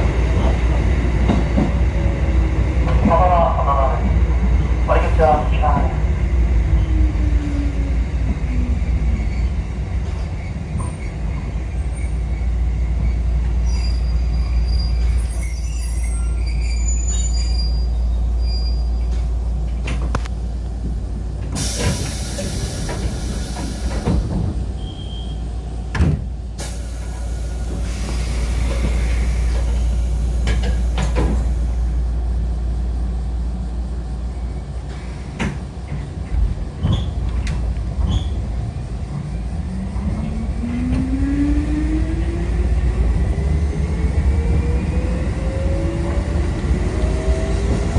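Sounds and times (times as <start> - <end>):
electric train rumble: 0.0 - 47.9.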